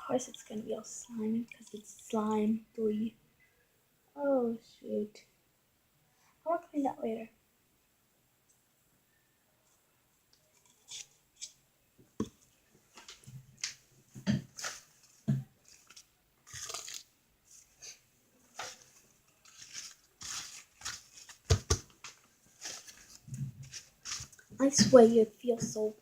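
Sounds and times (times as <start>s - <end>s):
slime squelching by hand: 13.6s - 25.9s.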